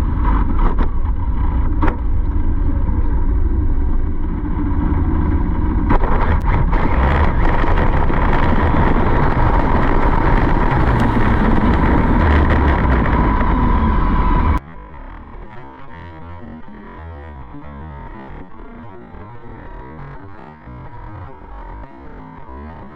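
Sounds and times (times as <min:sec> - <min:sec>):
vehicle whine at speed: 0:00.0 - 0:22.5
wind rumble on microphone: 0:00.0 - 0:22.9.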